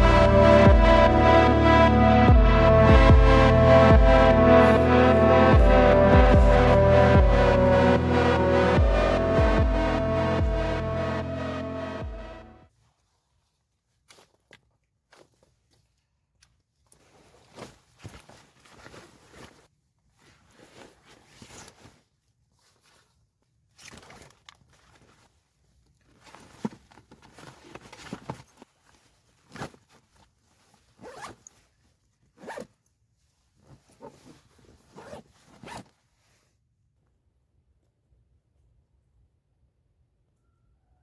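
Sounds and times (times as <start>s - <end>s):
close rustling and scraping: 16.9s - 36.6s.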